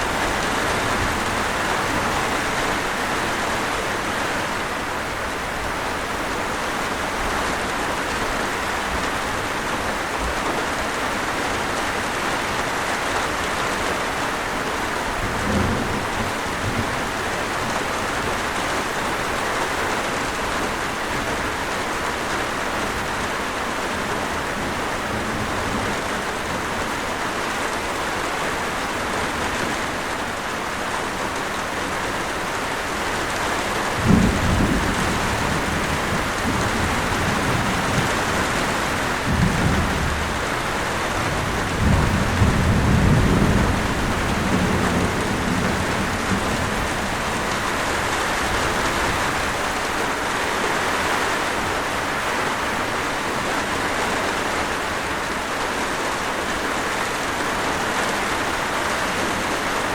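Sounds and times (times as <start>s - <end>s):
heavy rain: 0.0s - 59.9s
thunder rumbling: 15.0s - 19.4s, 33.4s - 49.9s.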